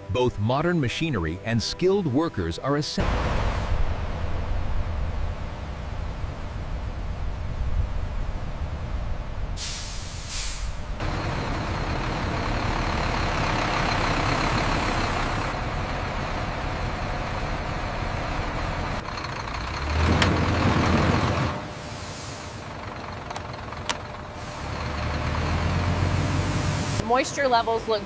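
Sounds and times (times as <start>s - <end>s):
heavy vehicle engine rumble: 3.0s - 28.0s
short air hisses: 9.6s - 10.9s, 21.7s - 22.7s.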